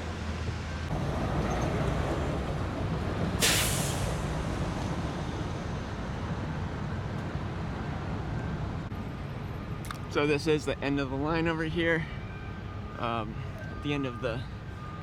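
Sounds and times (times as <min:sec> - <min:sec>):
road traffic rumble: 0:00.0 - 0:15.0
air brakes hissing: 0:03.4 - 0:04.4.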